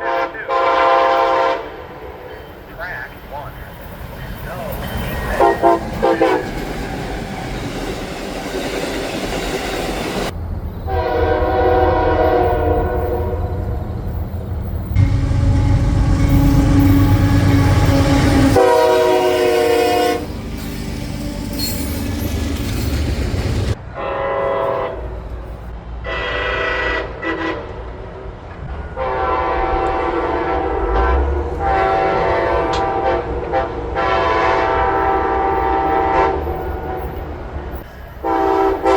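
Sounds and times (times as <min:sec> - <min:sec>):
locomotive horn blasts: 0:00.0 - 0:02.4, 0:05.4 - 0:06.5, 0:10.9 - 0:13.8, 0:15.0 - 0:20.4, 0:23.9 - 0:25.2, 0:26.0 - 0:27.8, 0:29.0 - 0:37.1, 0:38.2 - 0:38.9
passing train rumble: 0:00.0 - 0:38.9.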